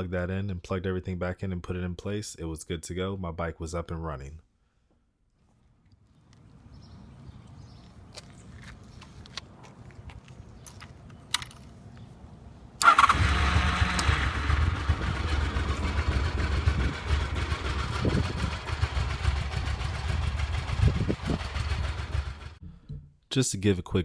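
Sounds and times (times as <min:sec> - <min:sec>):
motorcycle engine starting and running: 0:12.8 - 0:22.6.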